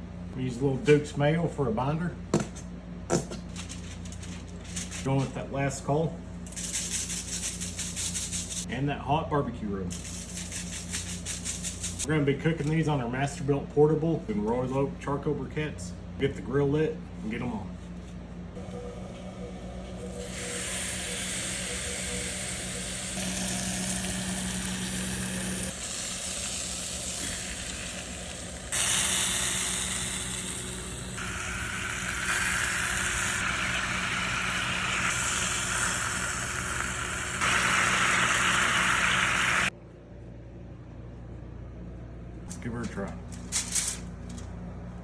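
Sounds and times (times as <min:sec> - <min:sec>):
chicken sizzling on a grill: 0:31.2 - 0:39.7.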